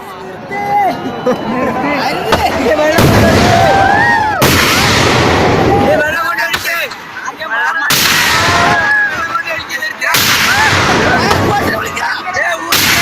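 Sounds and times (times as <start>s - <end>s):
voices shouting: 0.0s - 13.0s
firework blasts: 2.4s - 6.8s, 7.9s - 9.3s, 10.1s - 12.1s, 12.7s - 13.0s.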